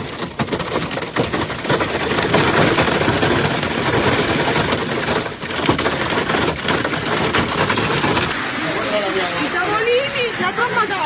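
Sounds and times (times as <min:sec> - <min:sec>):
hail pelting a hard surface: 0:00.0 - 0:08.4.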